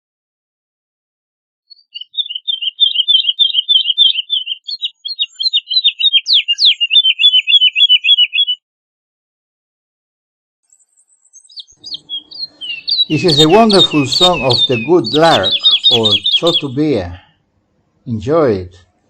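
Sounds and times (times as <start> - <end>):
bird singing fluty notes: 1.7 - 8.6, 10.7 - 17.2.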